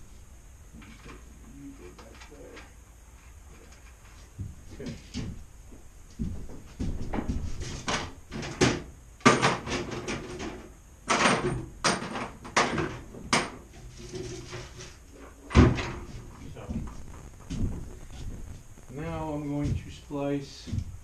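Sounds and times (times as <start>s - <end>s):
rustling: 13.7s - 21.0s.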